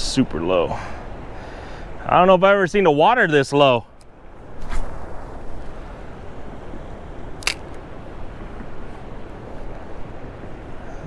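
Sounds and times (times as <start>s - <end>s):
outdoor background noise: 0.0s - 11.0s
sharp click: 7.4s - 7.8s.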